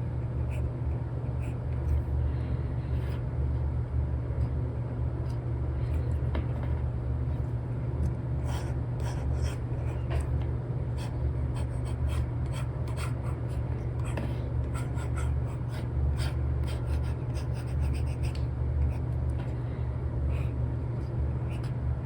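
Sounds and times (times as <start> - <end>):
low background rumble: 0.0 - 22.0
stylus scratching and tapping on screen: 8.4 - 10.3, 11.0 - 19.1.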